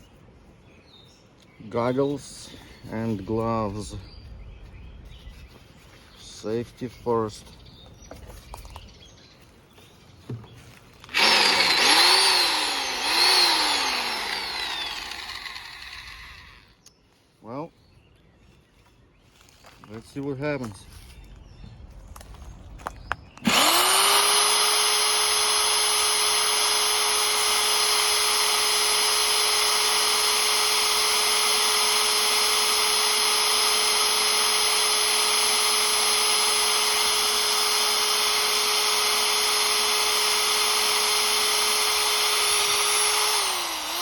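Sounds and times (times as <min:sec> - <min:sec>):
electric drill whining: 0:11.0 - 0:16.7, 0:23.4 - 0:44.0.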